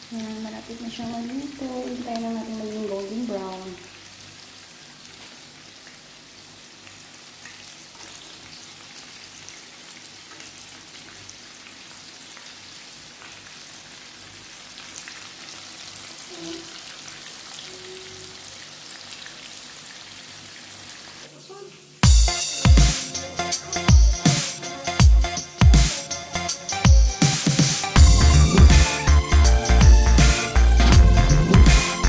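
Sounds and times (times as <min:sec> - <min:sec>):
chicken frying in oil: 0:00.0 - 0:22.0.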